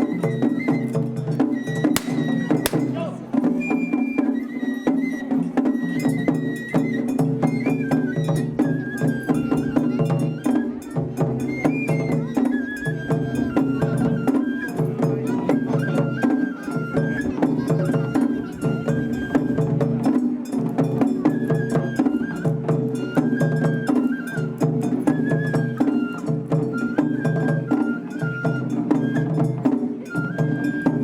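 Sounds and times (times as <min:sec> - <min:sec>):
fast percussion strikes: 0:02.0 - 0:03.5.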